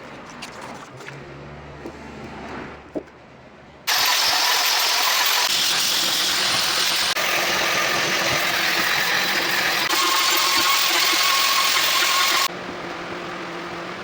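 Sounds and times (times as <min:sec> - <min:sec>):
electric power tool running: 0:03.9 - 0:12.5.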